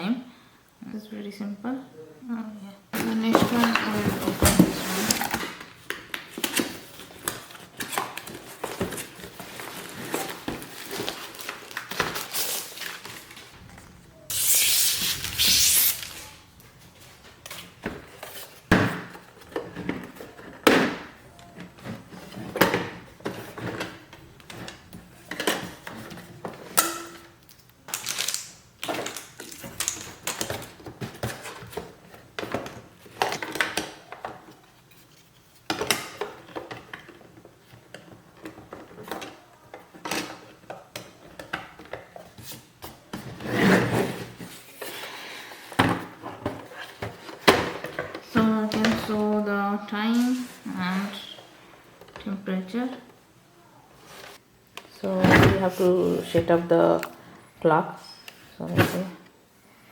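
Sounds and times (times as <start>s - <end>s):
cardboard and plastic packaging handling: 3.0s - 20.6s, 27.5s - 40.6s
loud packaging rustle: 3.4s - 20.2s, 27.9s - 31.7s.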